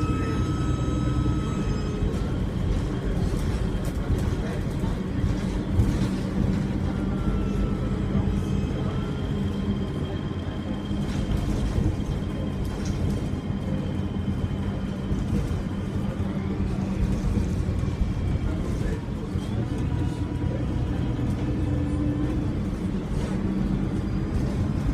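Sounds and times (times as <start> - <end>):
high turbo whistle: 0.0 - 2.3
bus engine drone: 0.0 - 24.9.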